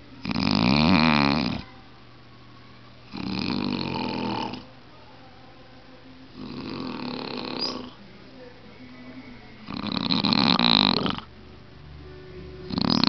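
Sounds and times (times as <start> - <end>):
man snoring: 0.2 - 1.6, 3.1 - 4.7, 6.4 - 8.0, 9.7 - 11.3.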